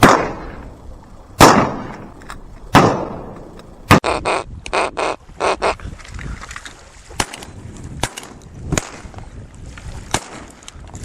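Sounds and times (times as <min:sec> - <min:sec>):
shotgun shots: 0:00.0 - 0:00.6, 0:01.4 - 0:02.1, 0:02.7 - 0:04.0, 0:07.2 - 0:09.1, 0:10.1 - 0:10.5
wind rumble on microphone: 0:00.0 - 0:11.0.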